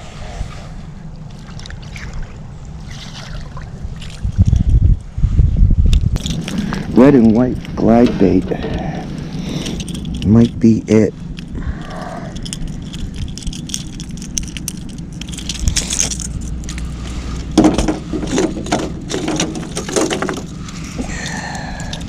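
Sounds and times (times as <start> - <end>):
steady low rumble: 0.0 - 22.0
metal tackle clinking and rattling: 6.2 - 8.0, 8.6 - 22.0.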